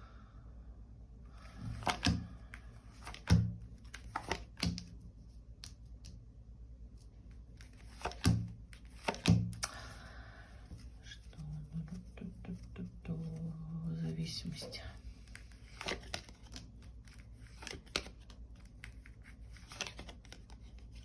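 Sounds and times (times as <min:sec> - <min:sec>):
cards sliding rustles: 0:01.4 - 0:06.2, 0:06.9 - 0:09.9, 0:14.7 - 0:21.0
cards tapping on a table: 0:01.7 - 0:02.3, 0:03.0 - 0:04.9, 0:08.0 - 0:09.6.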